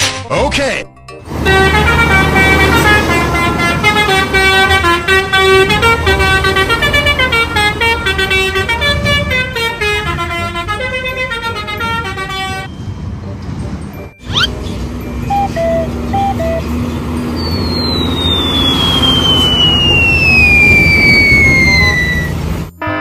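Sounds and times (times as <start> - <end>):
multi-tone bus air horn melody: 1.3 - 12.7, 15.3 - 16.8, 20.8 - 23.0
low engine rumble: 1.3 - 22.8.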